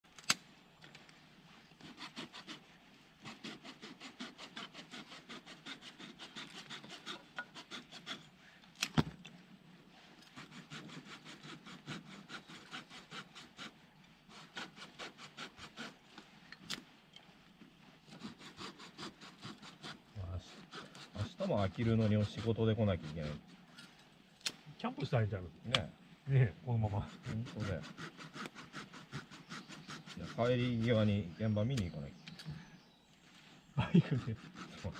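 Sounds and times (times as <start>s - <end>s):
hand saw cutting wood: 1.7s - 9.0s, 9.9s - 16.9s, 18.0s - 23.8s, 26.7s - 32.3s, 33.8s - 34.9s.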